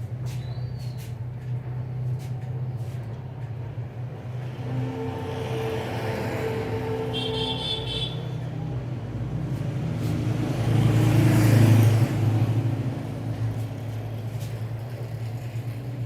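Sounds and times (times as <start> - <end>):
vehicle engine passing: 8.8 - 16.0.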